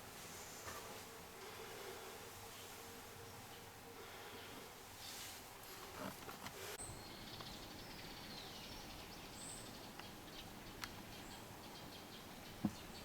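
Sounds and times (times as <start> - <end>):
faint forest ambience: 0.0 - 13.0.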